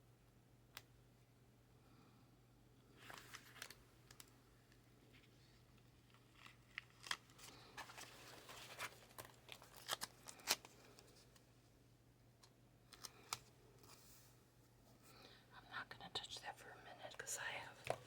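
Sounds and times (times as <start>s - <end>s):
paper crinkling and rustling: 3.0s - 4.3s, 5.0s - 11.4s.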